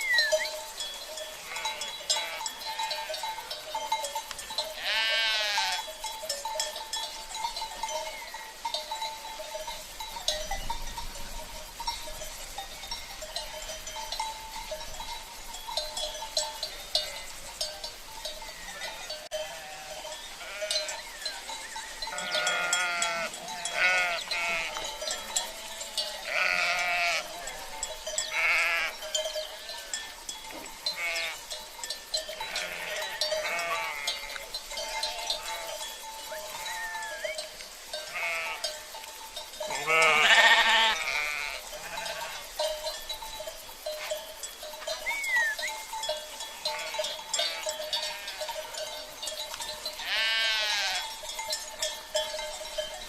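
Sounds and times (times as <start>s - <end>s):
livestock bells clinking: 0.0s - 53.0s
sheep bleating: 1.4s - 3.2s, 4.8s - 5.9s, 18.7s - 21.0s, 22.1s - 24.9s, 25.9s - 27.7s, 28.3s - 29.0s, 30.9s - 31.4s, 32.5s - 35.8s, 38.1s - 38.7s, 39.7s - 42.5s, 46.5s - 48.5s, 50.0s - 51.1s.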